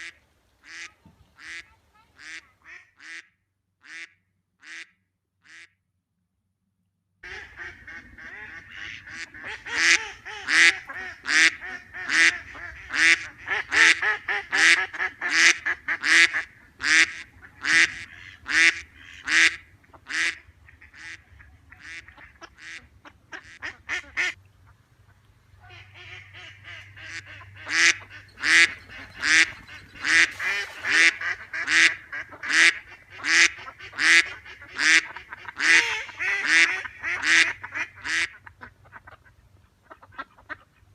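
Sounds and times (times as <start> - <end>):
ducks quacking: 0.0 - 4.9, 7.2 - 40.9.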